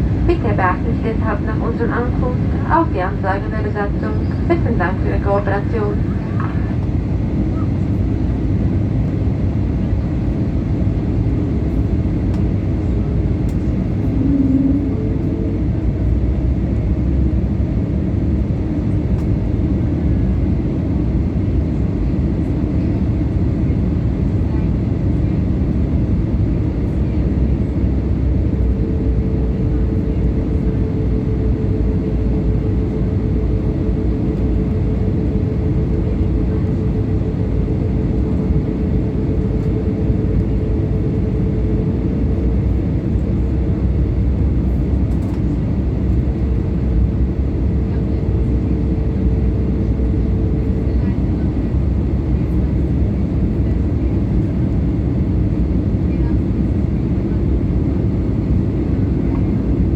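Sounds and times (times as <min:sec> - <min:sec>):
faint steady hum: 0:00.0 - 0:07.6
airliner cabin rumble: 0:00.0 - 0:59.9.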